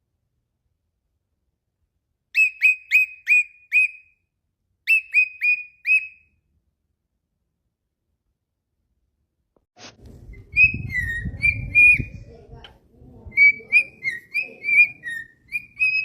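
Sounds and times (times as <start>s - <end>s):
cockatiel whistling: 2.4s - 4.2s, 4.9s - 6.4s, 10.3s - 12.2s, 13.3s - 16.0s.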